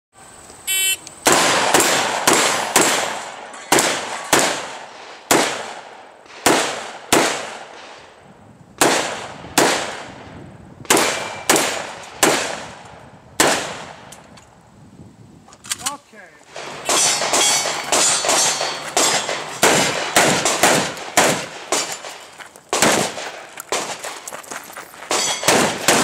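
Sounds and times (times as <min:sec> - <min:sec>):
shot timer beep: 0:00.7 - 0:01.0
gunshots: 0:00.8 - 0:08.1, 0:08.8 - 0:10.2, 0:10.9 - 0:12.8, 0:13.4 - 0:14.1, 0:16.5 - 0:24.2, 0:25.1 - 0:26.0.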